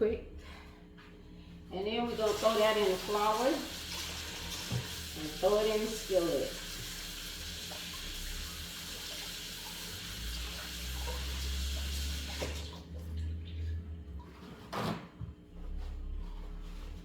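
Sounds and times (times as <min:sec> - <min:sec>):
water running from a tap: 0:02.1 - 0:13.7.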